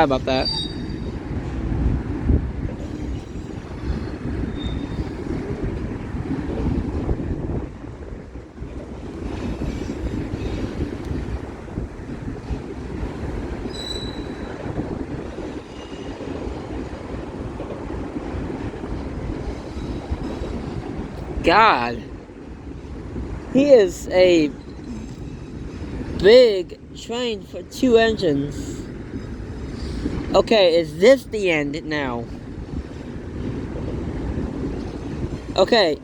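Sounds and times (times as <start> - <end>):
high wheel squeals: 0.4 - 1.2, 2.8 - 5.2, 13.7 - 14.6
train wheels rumbling on track: 8.6 - 21.3.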